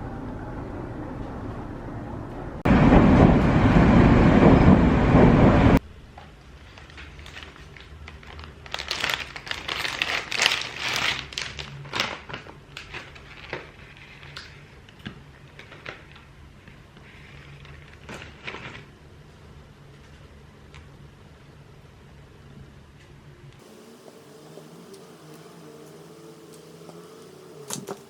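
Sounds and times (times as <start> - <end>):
crinkling and rustling handling: 6.2 - 18.9, 23.6 - 28.0
faint low hum: 23.0 - 28.0.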